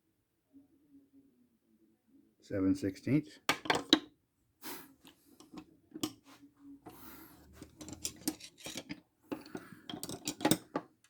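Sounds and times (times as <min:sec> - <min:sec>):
screwdrivers clinking together: 0:03.5 - 0:04.0, 0:07.5 - 0:10.9.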